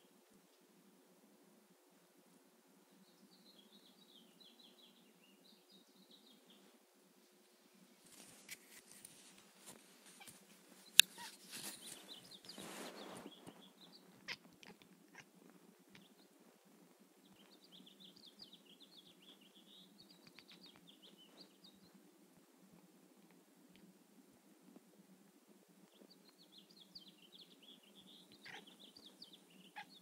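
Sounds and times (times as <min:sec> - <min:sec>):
small birds chirping: 0:02.8 - 0:06.9, 0:07.7 - 0:23.9, 0:25.7 - 0:30.0
brief rustle: 0:08.0 - 0:13.6.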